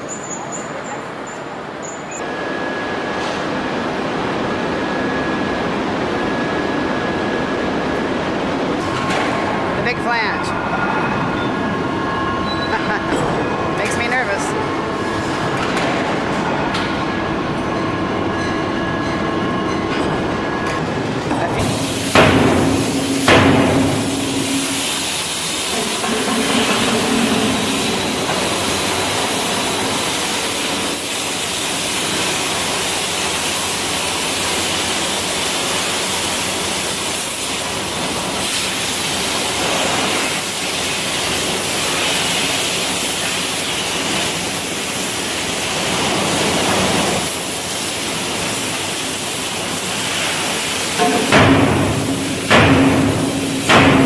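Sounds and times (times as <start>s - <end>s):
machine hum: 2.2s - 33.0s, 50.5s - 54.0s
heavy ringing press blows: 21.6s - 30.7s, 50.8s - 54.0s
loud hissing rush: 21.6s - 54.0s.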